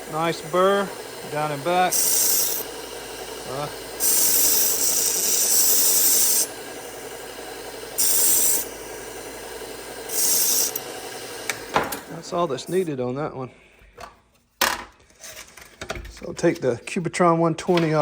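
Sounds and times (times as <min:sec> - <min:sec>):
belt sander motor hum: 0:00.0 - 0:11.7.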